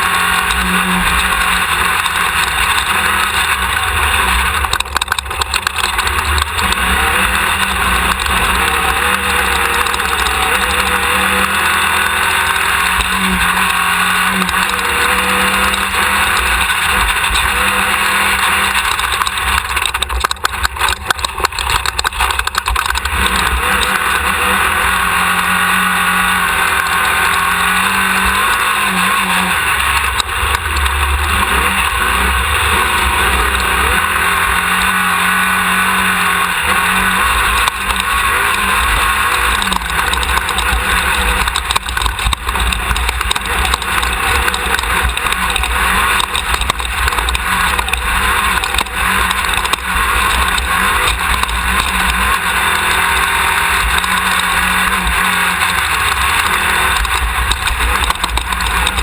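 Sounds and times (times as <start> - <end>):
buggy engine running hard: 0.0 - 59.0
chassis knocks and rattles: 0.5 - 24.2, 36.9 - 59.0.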